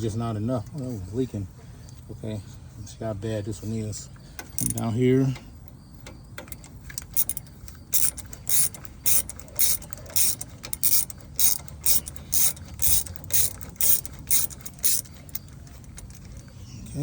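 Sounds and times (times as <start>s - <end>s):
ratchet clicking: 4.4s - 5.0s, 6.0s - 16.6s.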